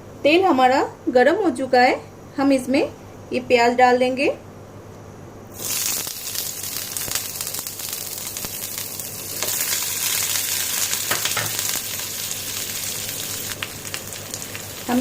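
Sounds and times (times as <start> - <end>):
onions sizzling in hot oil: 5.5 - 15.0.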